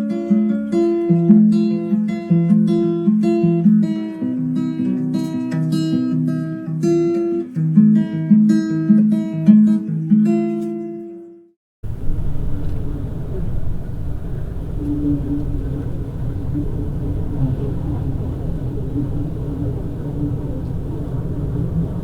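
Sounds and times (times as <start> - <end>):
acoustic guitar picking: 0.0 - 22.0
wind buffeting microphone: 11.8 - 22.0.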